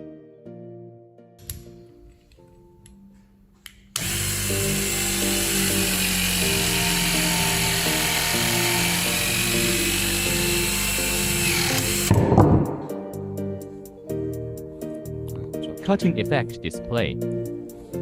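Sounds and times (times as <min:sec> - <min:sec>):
background music: 0:00.0 - 0:18.0
hydraulic cutting tool motor whining: 0:04.0 - 0:12.2.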